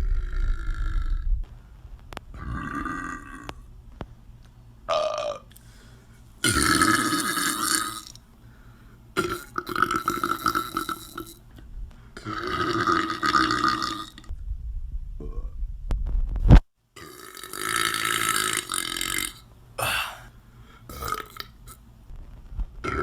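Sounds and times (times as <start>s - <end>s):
person belching: 0.0s - 1.3s, 2.3s - 3.6s, 4.9s - 5.5s, 6.4s - 8.2s, 9.2s - 11.4s, 12.2s - 14.3s, 17.0s - 20.3s, 20.9s - 21.8s.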